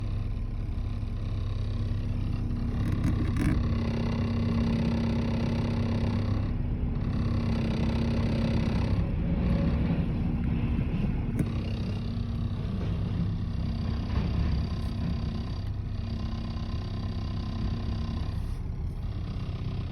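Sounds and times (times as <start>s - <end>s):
engine running steadily: 0.0s - 19.9s.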